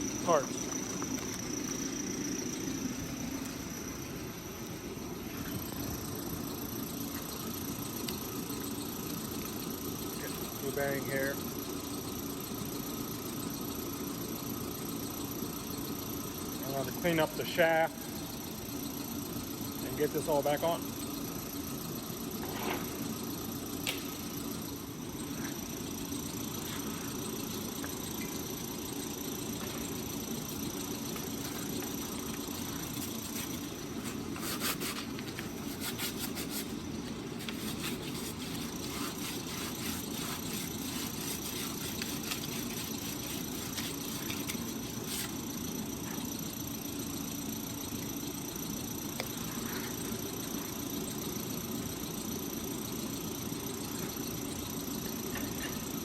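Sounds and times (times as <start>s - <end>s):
machine hum: 0.0s - 56.0s
sandpaper rubbing on metal: 33.0s - 45.4s.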